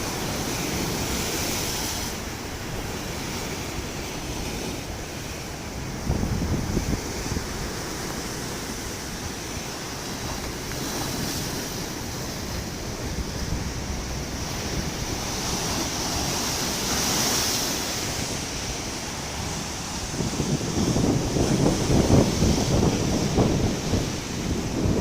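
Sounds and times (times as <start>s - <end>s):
sea surf washing ashore: 0.0s - 25.0s
wind noise on microphone: 0.0s - 25.0s.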